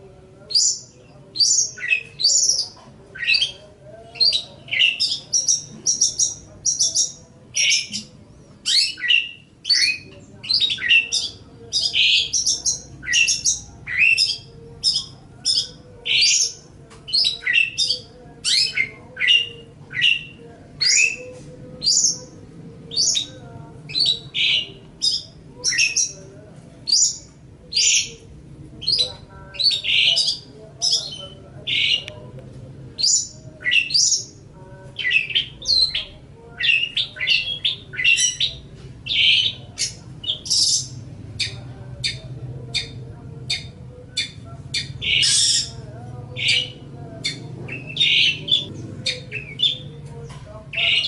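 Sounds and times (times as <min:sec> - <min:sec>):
bird singing scratchy notes: 0:00.4 - 0:26.3, 0:33.0 - 0:51.0.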